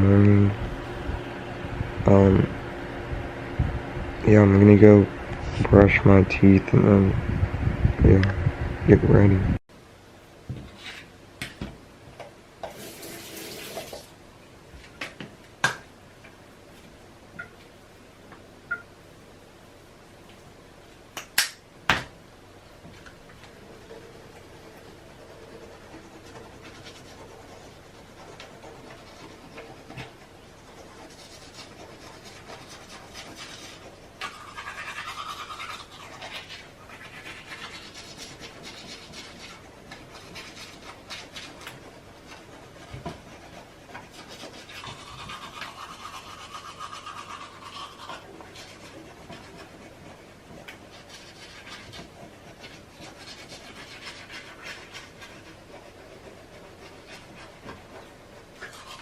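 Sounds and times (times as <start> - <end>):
toothbrush scrubbing teeth: 23.8 - 59.0.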